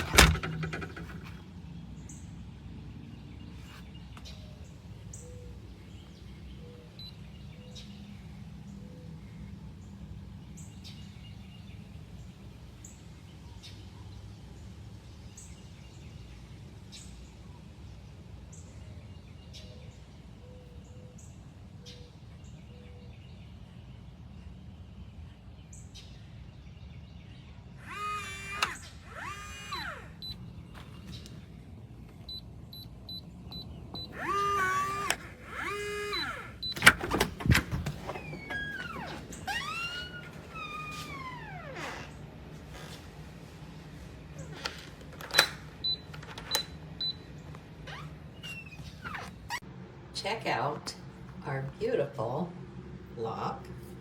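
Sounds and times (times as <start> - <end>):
deadbolt motor whirring: 0.0 - 1.4, 27.8 - 30.5, 32.2 - 42.2
low background hum: 0.0 - 54.0.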